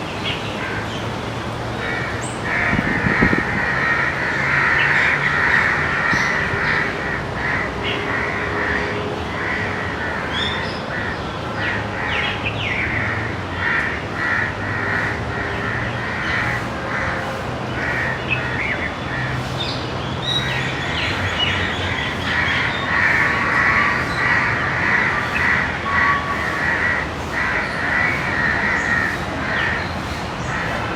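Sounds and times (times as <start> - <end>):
crows cawing: 1.8 - 18.8, 22.2 - 29.8.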